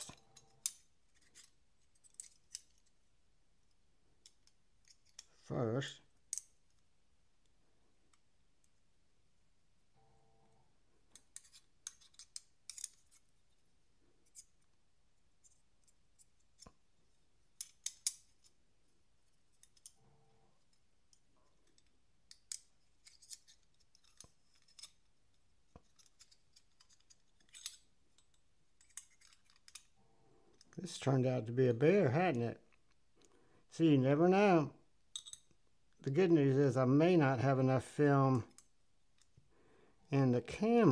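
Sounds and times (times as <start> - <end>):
small metallic clicks of knife parts: 0.0 - 3.0, 4.2 - 5.4, 6.3 - 6.8, 11.1 - 13.3, 17.6 - 18.6, 19.5 - 20.0, 20.7 - 25.1, 25.7 - 30.8, 35.1 - 35.6.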